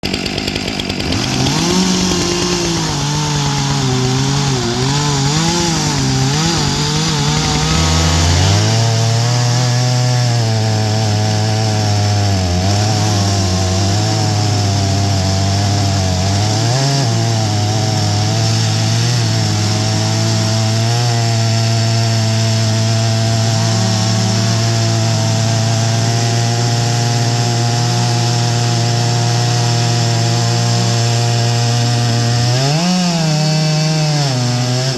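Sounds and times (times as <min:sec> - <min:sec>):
chainsaw milling wood: 0:00.0 - 0:34.9.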